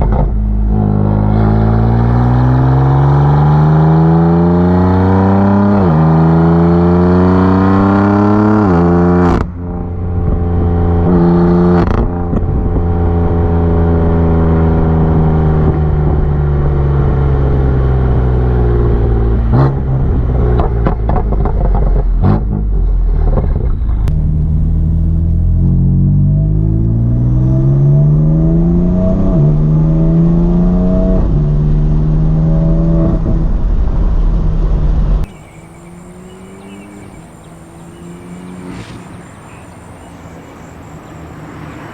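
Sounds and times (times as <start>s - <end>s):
car engine accelerating hard: 0.0s - 41.9s.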